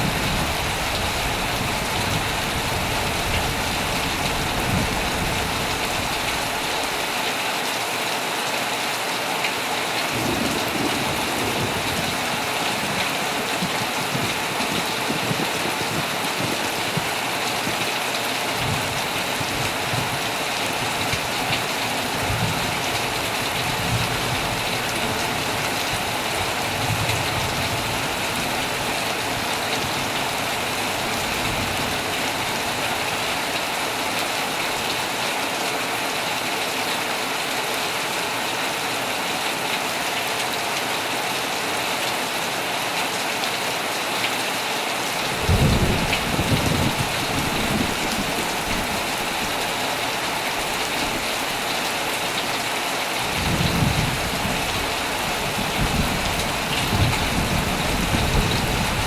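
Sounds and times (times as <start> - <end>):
thunder rumbling: 0.0 - 6.9, 10.1 - 17.8, 45.3 - 52.4, 53.2 - 59.0
heavy rain on a tent: 0.0 - 59.0.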